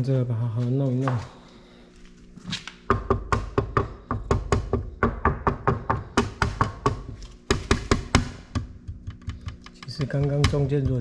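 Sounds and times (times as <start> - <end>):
rapid sharp knocks: 2.9 - 11.0.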